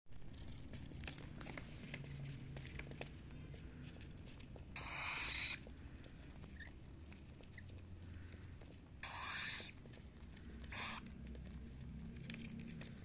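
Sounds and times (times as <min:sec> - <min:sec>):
birds scratching in nest: 0:07.6 - 0:13.0
harsh hissing rasp: 0:09.0 - 0:09.8.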